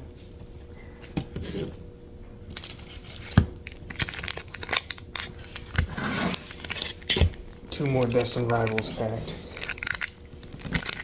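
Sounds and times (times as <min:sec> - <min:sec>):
card packs crinkling and rustling: 0:02.5 - 0:11.0.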